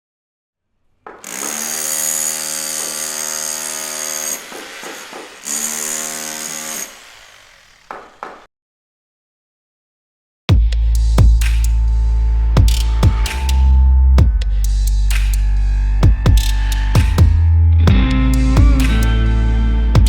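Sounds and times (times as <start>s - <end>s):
short knocks: 1.0s - 1.5s
electric power tool running: 1.1s - 8.5s.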